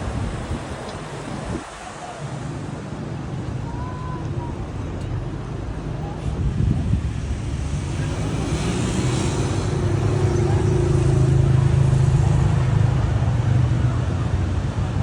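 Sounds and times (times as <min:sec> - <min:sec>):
vehicle engine passing by: 0:07.0 - 0:15.0.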